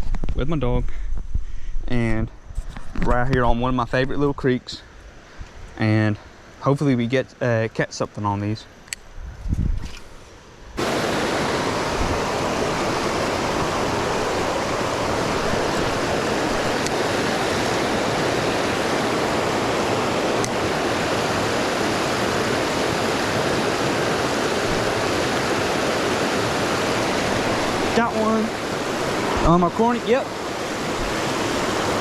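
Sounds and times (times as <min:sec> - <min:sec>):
creek water rushing over rocks: 0:10.8 - 0:32.0.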